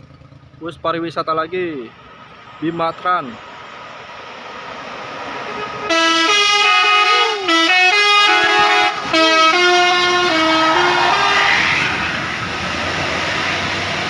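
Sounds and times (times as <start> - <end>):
passing vehicle road noise: 0.0 - 14.0
musical air horns playing tune: 5.5 - 12.0.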